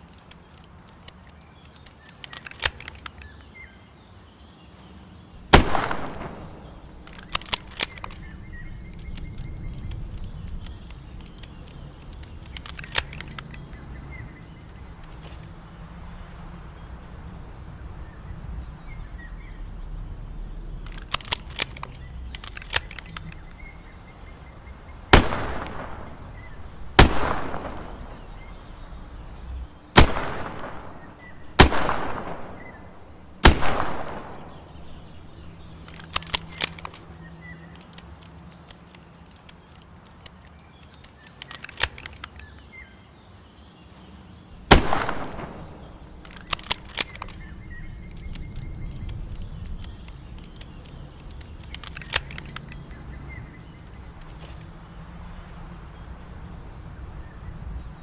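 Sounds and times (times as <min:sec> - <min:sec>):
quick small clicks: 0:00.0 - 0:03.5, 0:05.8 - 0:13.9, 0:20.8 - 0:23.9, 0:25.2 - 0:42.7, 0:44.7 - 0:54.8.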